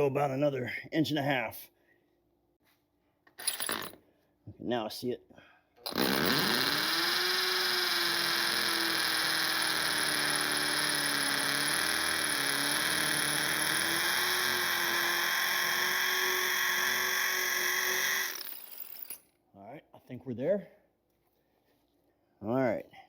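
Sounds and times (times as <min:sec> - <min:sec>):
electric drill boring: 0:05.8 - 0:19.2.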